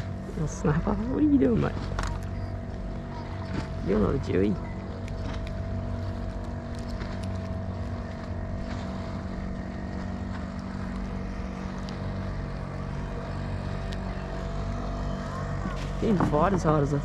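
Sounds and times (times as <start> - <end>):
motorboat engine running: 0.0 - 17.0
faint clicks: 4.9 - 8.3, 10.5 - 12.4, 13.8 - 14.1.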